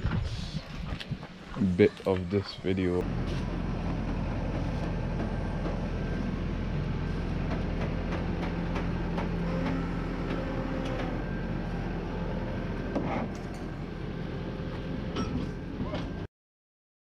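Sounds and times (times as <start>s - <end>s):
steady low rumble: 0.0s - 9.4s
faint hum: 0.0s - 16.3s.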